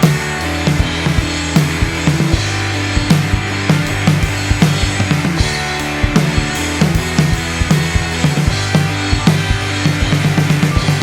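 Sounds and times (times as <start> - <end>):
rock band playing: 0.0 - 11.0.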